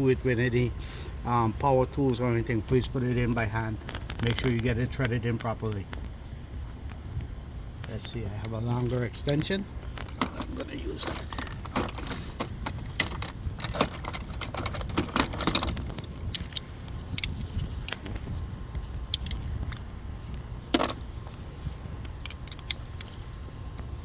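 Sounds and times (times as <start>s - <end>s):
steady low rumble: 0.0s - 24.0s
metal hand tools clinking: 10.1s - 16.6s.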